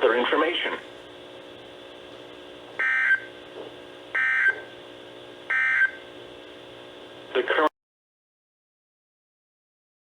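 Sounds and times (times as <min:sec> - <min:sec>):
faint steady hum: 0:00.0 - 0:07.7.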